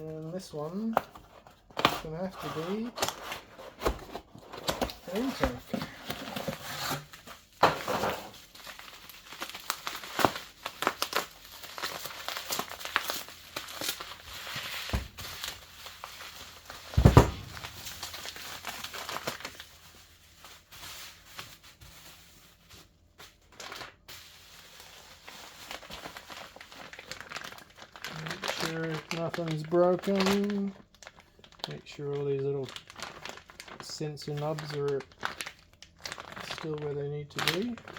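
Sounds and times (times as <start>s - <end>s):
packaging crinkling and tearing: 0.2s - 37.9s
heavy thump: 17.0s - 17.9s.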